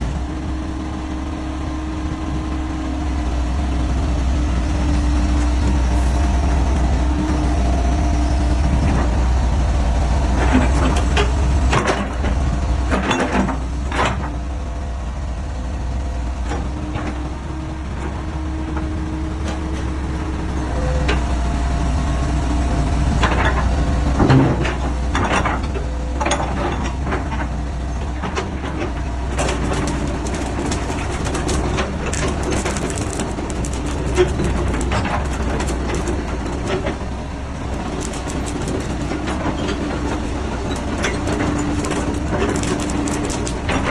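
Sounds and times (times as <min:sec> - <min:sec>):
excavator diesel engine rumbling: 0:00.0 - 0:43.9.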